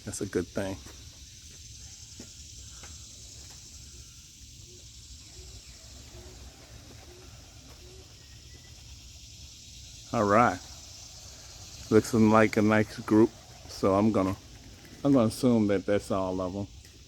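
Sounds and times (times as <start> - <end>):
high insect drone: 0.0 - 17.0
pigeon cooing: 4.6 - 9.0.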